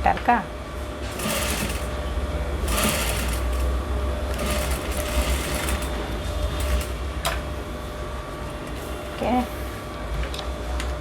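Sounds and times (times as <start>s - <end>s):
sewing machine running: 1.0s - 7.5s.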